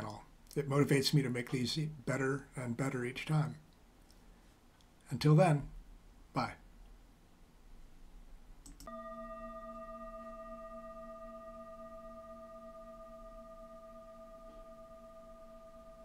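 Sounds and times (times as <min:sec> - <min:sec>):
faint click: 0:08.6 - 0:08.9
bell-like chime ringing: 0:08.9 - 0:16.0.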